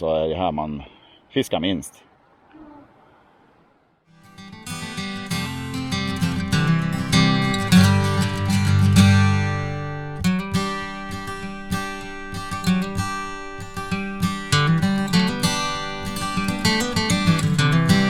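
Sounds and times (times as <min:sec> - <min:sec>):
acoustic guitar chords: 0:04.1 - 0:18.0.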